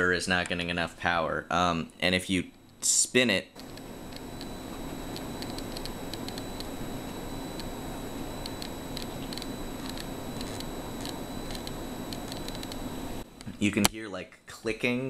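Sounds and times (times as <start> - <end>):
small motor high whine: 3.6 - 13.2
motor irregular clicking: 5.1 - 6.7, 8.4 - 12.8.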